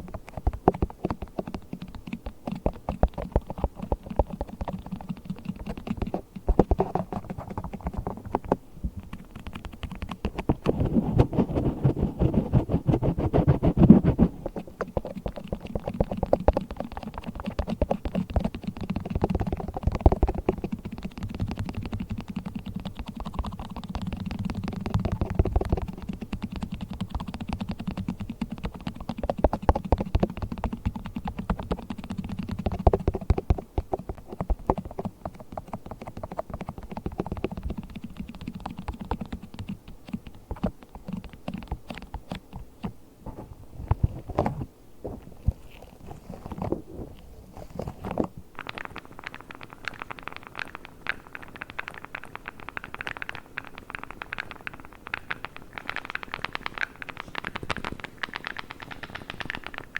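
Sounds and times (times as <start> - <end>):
rubber gloves rubbing and squeaking: 9.1 - 18.5, 43.3 - 59.9
plastic tool crackling: 44.0 - 59.9.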